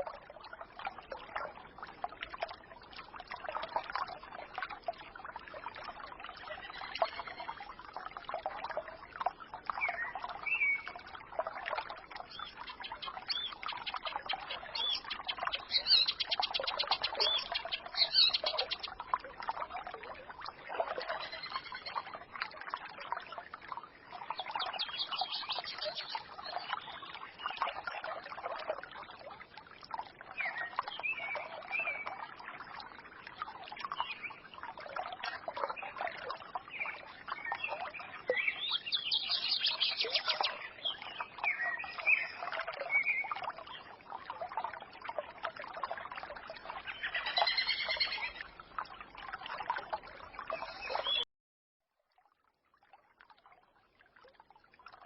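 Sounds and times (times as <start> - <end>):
stream trickling and babbling: 0.0 - 55.0
songbirds chirping: 3.7 - 7.9, 11.8 - 22.3, 24.2 - 28.8, 35.3 - 43.9, 46.6 - 48.6, 49.6 - 51.3.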